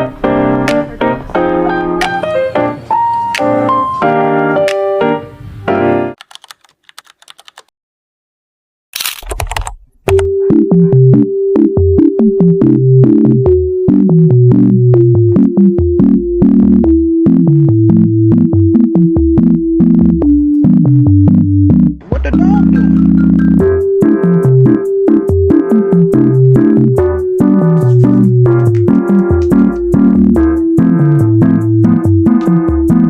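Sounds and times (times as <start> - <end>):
piano notes: 0.0 - 6.2, 19.6 - 33.0
electronic music with bass: 10.1 - 33.0
clicking percussion: 27.6 - 31.3.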